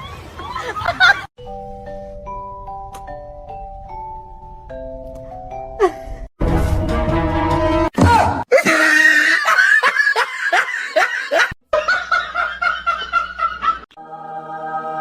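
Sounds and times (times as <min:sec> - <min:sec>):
laughter in rhythmic bursts: 0:00.3 - 0:01.3, 0:09.2 - 0:13.9.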